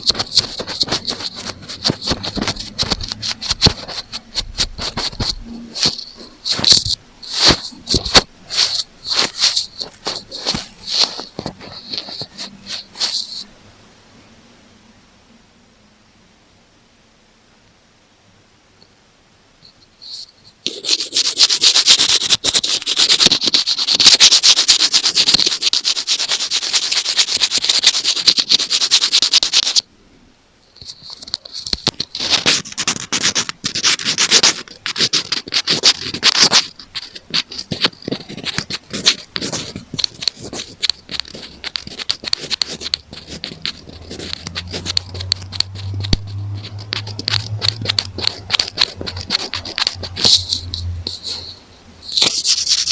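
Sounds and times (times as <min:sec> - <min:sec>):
sharp clicks and taps: 0:00.0 - 0:13.5, 0:30.8 - 0:51.5
scratching on earphone microphone: 0:00.0 - 0:13.6, 0:19.6 - 0:29.9, 0:30.6 - 0:52.9.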